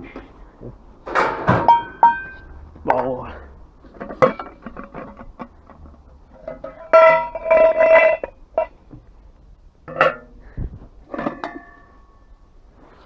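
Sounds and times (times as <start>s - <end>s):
scrap metal clangs: 1.0s - 3.0s
metal knock: 1.1s - 2.6s.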